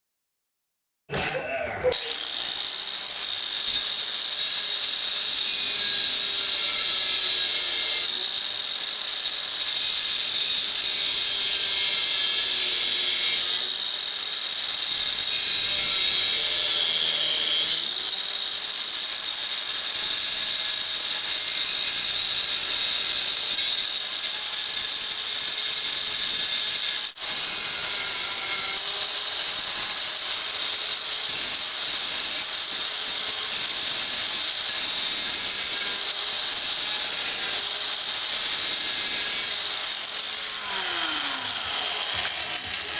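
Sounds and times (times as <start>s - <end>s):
grinder running: 1.9s - 42.9s.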